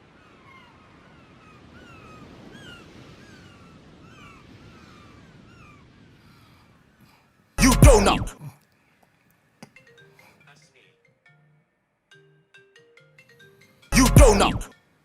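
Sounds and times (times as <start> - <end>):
animals chirping: 0.0 - 7.4.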